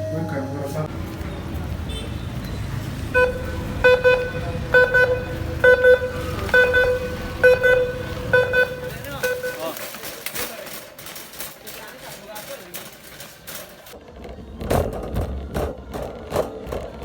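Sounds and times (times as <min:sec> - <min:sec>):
low vehicle rumble: 0:00.8 - 0:09.5
horn tooting in double pulses: 0:03.0 - 0:09.7.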